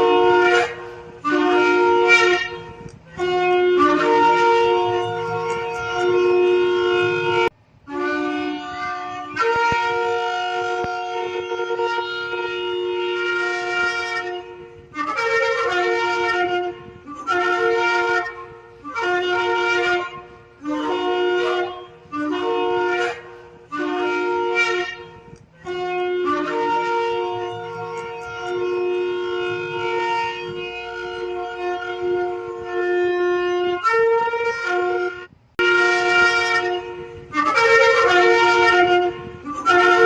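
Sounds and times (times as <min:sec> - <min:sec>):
shofar blasts: 0:00.0 - 0:40.0.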